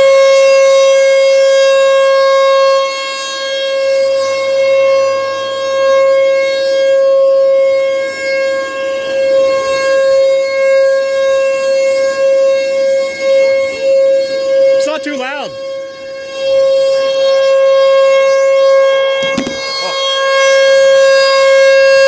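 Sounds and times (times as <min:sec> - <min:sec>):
warning siren steady tone: 0:00.0 - 0:22.0.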